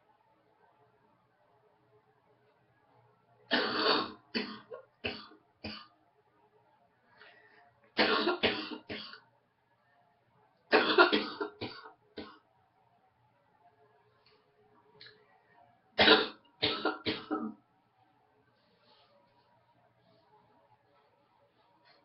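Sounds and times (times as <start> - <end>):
woman coughing: 3.5 - 5.9, 10.8 - 12.4, 16.0 - 17.6.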